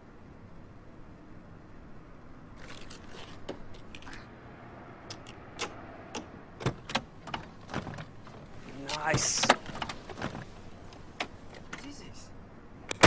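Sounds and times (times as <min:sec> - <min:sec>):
sharp clicks and knocks: 0:05.1 - 0:11.9.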